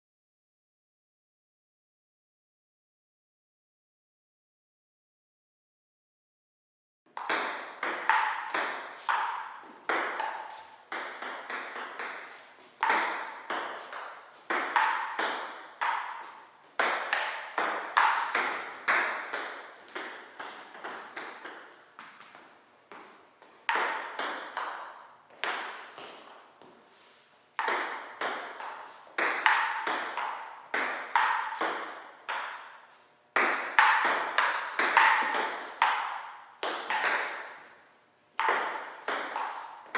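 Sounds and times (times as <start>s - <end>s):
ping pong ball clicking: 7.2s - 21.8s, 27.6s - 32.8s, 33.4s - 37.8s, 38.4s - 39.9s.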